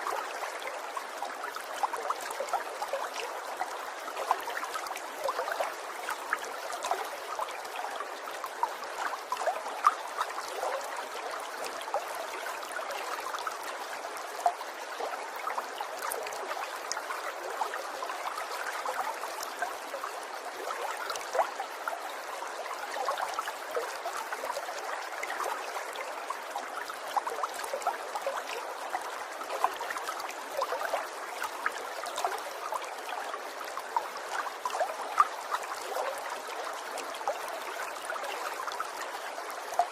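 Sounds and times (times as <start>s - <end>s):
water trickling and babbling: 0.0s - 39.9s.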